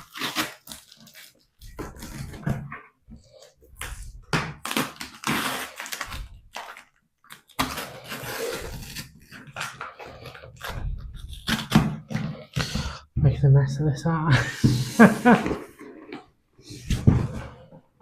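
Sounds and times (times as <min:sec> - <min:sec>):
cardboard packaging ripping: 0:00.0 - 0:02.7, 0:03.8 - 0:12.7.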